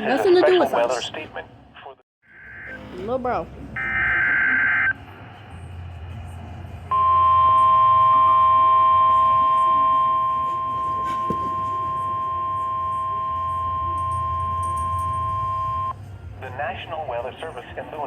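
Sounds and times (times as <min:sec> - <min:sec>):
high-pitched alarm tone: 0:02.3 - 0:03.0, 0:03.8 - 0:05.0, 0:06.9 - 0:16.0.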